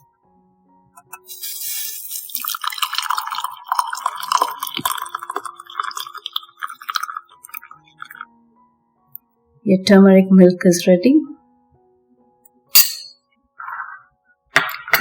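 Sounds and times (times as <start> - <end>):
milk pouring through strainer: 1.3 - 8.3.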